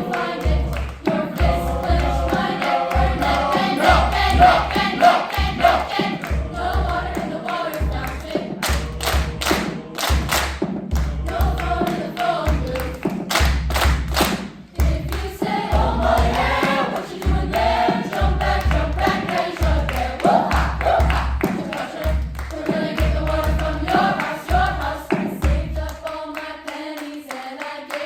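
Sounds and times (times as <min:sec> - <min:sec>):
choir singing: 0:00.0 - 0:13.2, 0:14.7 - 0:28.0
low thudding beat: 0:00.0 - 0:22.3.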